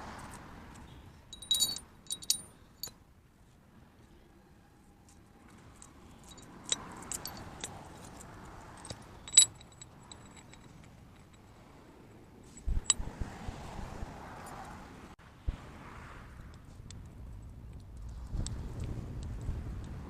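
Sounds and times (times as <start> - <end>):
metal tools clinking: 1.3 - 2.9, 6.2 - 11.4.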